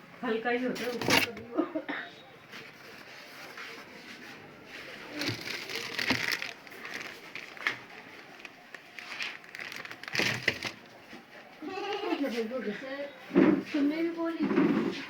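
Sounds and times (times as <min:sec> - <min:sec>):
packaging crinkling and rustling: 0:05.0 - 0:11.0.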